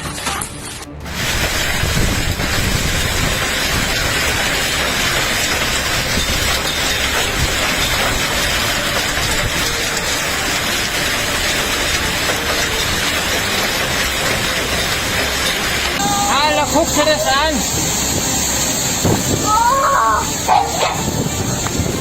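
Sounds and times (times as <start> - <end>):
hail and rain pelting down: 1.0 - 22.0
wind buffeting microphone: 1.2 - 4.2, 17.7 - 19.6, 20.3 - 22.0.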